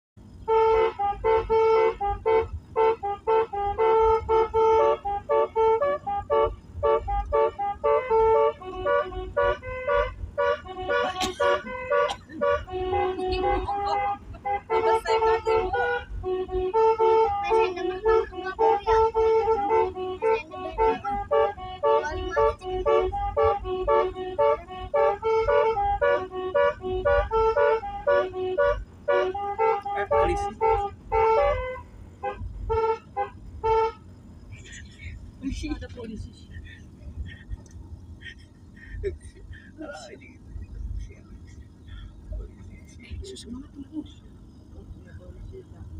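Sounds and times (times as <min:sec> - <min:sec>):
multi-tone vehicle horn tune: 0:00.3 - 0:34.2.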